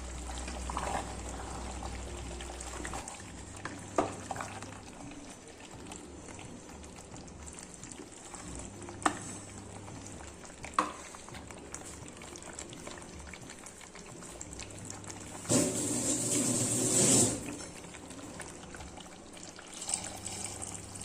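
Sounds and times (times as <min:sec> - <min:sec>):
curry sizzling in a pot: 0:00.0 - 0:21.0
water poured with rushing splash: 0:15.5 - 0:17.5.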